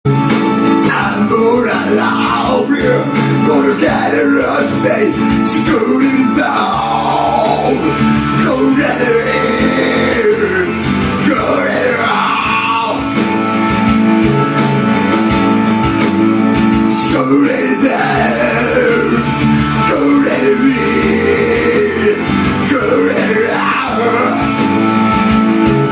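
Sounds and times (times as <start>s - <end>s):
guitar-led band playing: 0.1s - 25.9s
person singing: 0.8s - 13.2s, 16.8s - 25.1s.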